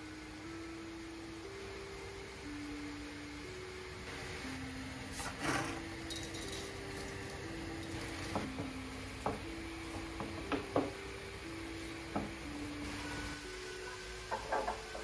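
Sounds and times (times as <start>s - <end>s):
quiet background melody: 0.0s - 15.0s
dishes and glassware clinking: 6.1s - 6.8s, 14.3s - 15.0s.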